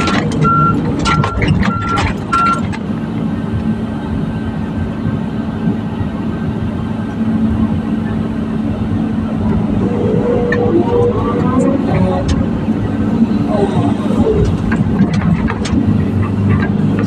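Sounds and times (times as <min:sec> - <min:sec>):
reversing alarm beep: 0:00.0 - 0:02.6
excavator diesel engine humming: 0:00.0 - 0:17.0.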